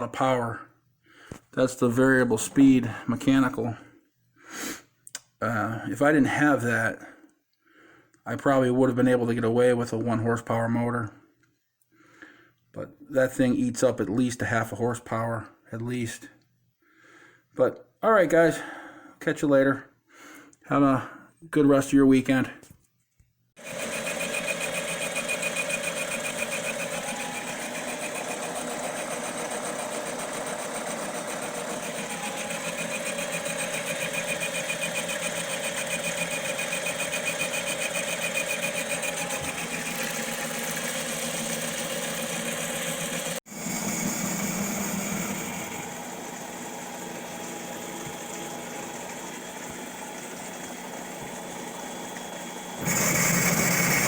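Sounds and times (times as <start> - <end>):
machinery mechanical chatter: 23.6 - 46.0.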